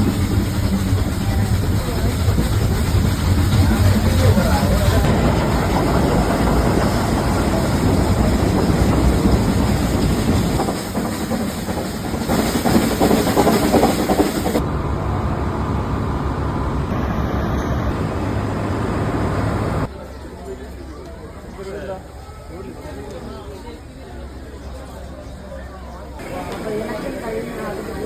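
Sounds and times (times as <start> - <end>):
train wheels clattering on rails: 0.0 - 15.6
train hiss: 0.0 - 19.9.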